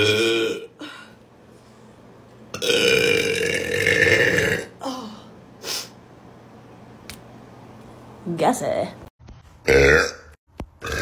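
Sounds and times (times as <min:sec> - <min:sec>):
woman burping: 0:00.0 - 0:01.1, 0:02.6 - 0:05.1, 0:09.7 - 0:11.0.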